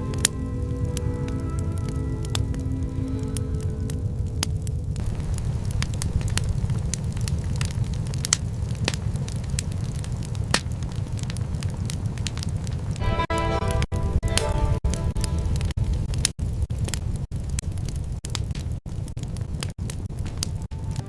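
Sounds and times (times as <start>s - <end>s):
background music: 0.0s - 4.5s, 13.0s - 15.7s
fire crackling and popping: 0.0s - 21.0s.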